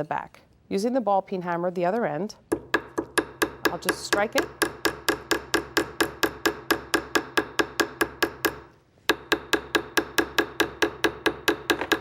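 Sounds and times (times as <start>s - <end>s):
hammer tapping metal disc: 2.5s - 12.0s.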